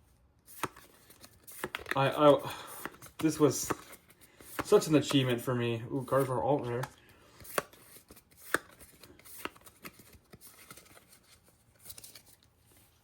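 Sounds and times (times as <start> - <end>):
faint rustling of card packs: 0.0 - 13.0
cards tapping and clicking: 0.5 - 5.5, 6.1 - 11.3.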